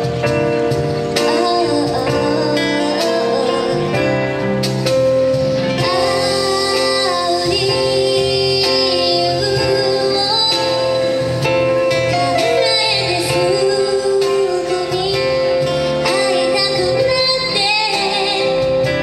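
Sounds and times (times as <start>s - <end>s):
pop band playing: 0.0s - 19.0s
woman singing: 1.0s - 4.6s, 5.5s - 19.0s.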